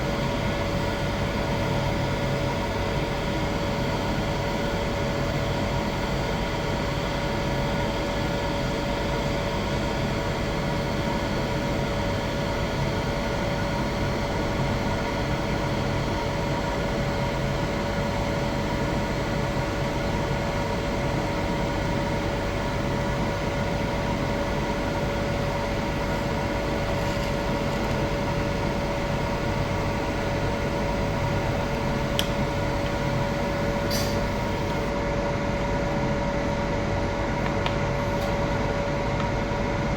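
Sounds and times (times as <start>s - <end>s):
welding machine hum: 24.1s - 38.8s.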